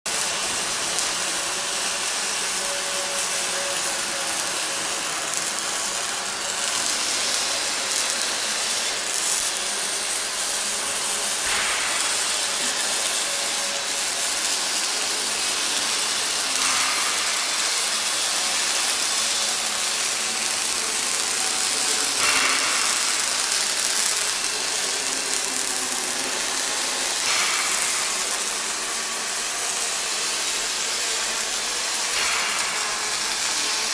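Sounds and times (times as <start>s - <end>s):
welding arc crackling and hissing: 0.1s - 33.9s.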